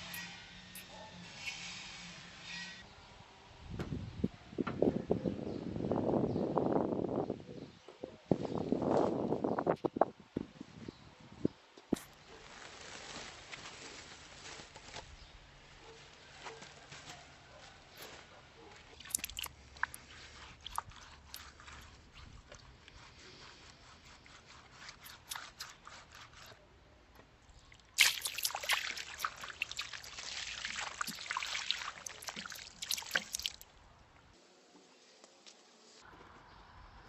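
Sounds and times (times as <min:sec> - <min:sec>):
tool scraping gravel: 0:19.1 - 0:26.6.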